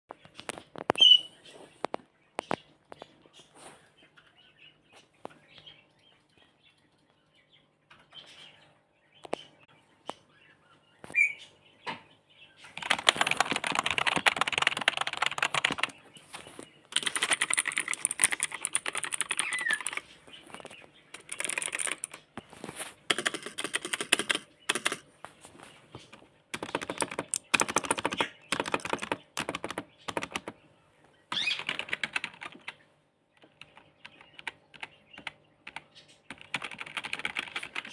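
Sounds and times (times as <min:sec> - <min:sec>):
typing on computer keyboard: 0:12.8 - 0:16.0, 0:16.9 - 0:20.1, 0:21.1 - 0:22.2, 0:23.1 - 0:25.0, 0:26.5 - 0:30.6, 0:31.3 - 0:32.8, 0:33.4 - 0:37.9.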